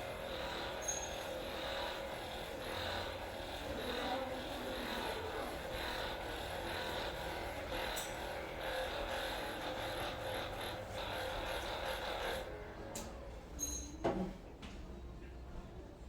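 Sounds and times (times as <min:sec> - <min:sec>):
massage gun buzzing: 0:00.0 - 0:12.4.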